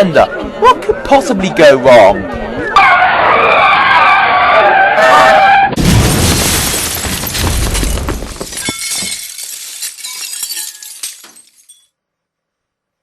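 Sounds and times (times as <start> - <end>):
falling debris clinking: 5.8 - 11.9
glass shattering: 5.8 - 11.9.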